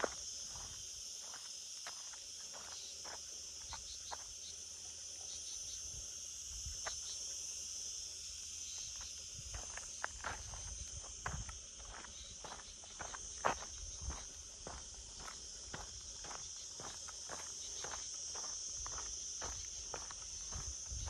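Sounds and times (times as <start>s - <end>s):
high-pitched insect chorus: 0.0s - 21.0s
light footsteps: 9.0s - 21.0s.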